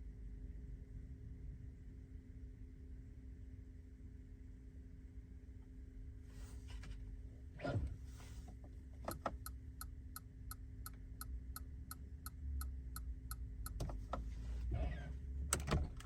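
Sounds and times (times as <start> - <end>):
faint steady hum: 0.0 - 16.0
turn signal ticking: 9.0 - 14.8.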